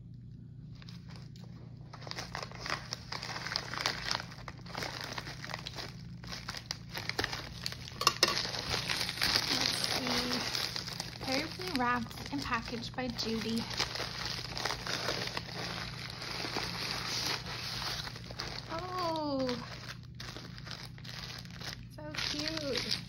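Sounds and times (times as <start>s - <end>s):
low hum: 0.0s - 23.0s
packaging crinkling: 0.7s - 23.0s.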